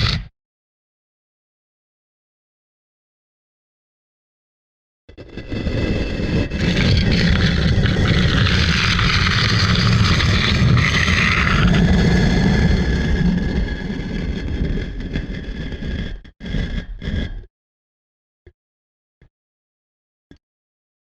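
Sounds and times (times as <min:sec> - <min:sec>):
stone block scraping on stone: 0:05.1 - 0:17.5.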